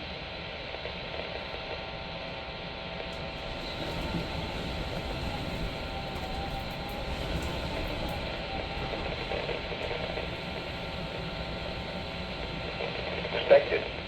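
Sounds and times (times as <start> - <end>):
faint hum: 3.1 - 14.0
radio static and hiss: 12.6 - 14.0.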